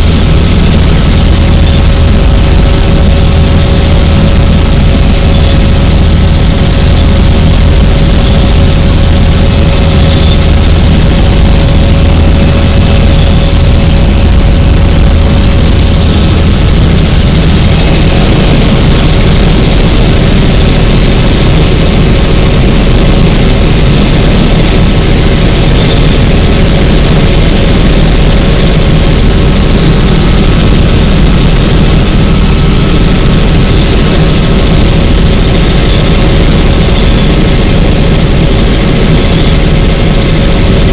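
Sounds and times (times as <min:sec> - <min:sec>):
helicopter flying: 0:00.0 - 0:40.9.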